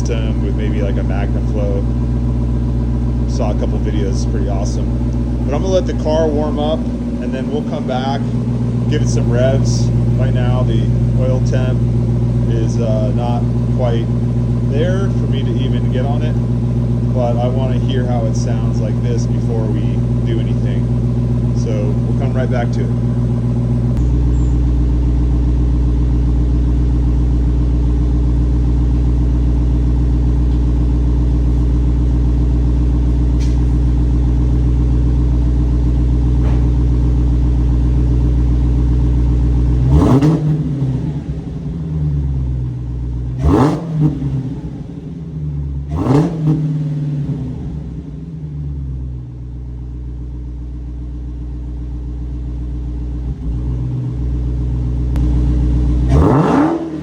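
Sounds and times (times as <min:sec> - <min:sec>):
car engine idling and revving: 0:00.0 - 0:57.0.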